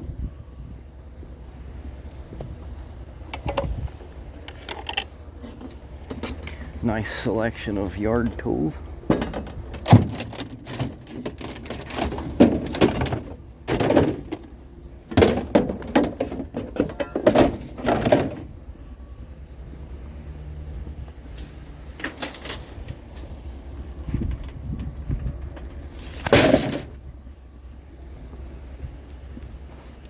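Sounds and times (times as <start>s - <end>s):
yard tools knocking and clattering: 3.2s - 18.6s, 21.4s - 23.0s, 24.2s - 27.0s.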